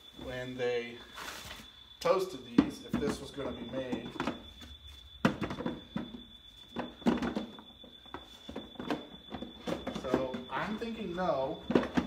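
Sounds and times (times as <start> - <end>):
faint steady high whine: 0.0 - 12.0
hard plastic knocks and clatter: 5.2 - 10.5, 11.7 - 12.0.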